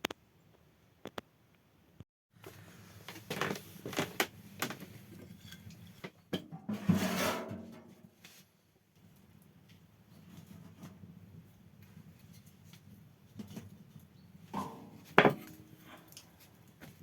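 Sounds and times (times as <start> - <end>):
knocks and clunks of handling: 14.6 - 16.2.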